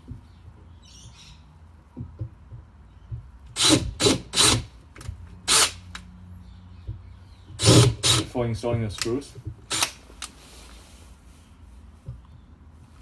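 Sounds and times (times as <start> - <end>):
power drill boring into wood: 3.6 - 4.7, 7.6 - 8.3.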